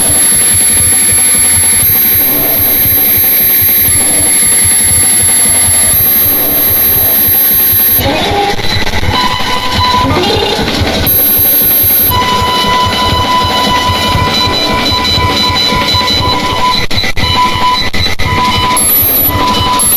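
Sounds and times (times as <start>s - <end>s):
electronic alert tones: 0.0s - 8.0s, 11.1s - 12.2s, 18.8s - 19.9s
harsh alarm noise: 0.0s - 8.1s, 10.6s - 16.6s, 18.6s - 19.9s.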